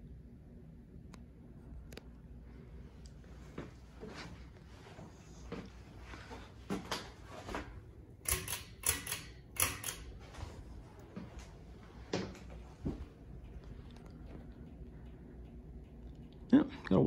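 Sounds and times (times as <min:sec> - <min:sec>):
ceiling fan humming: 0:00.0 - 0:17.0
sharp clicks and ticks: 0:08.2 - 0:10.2.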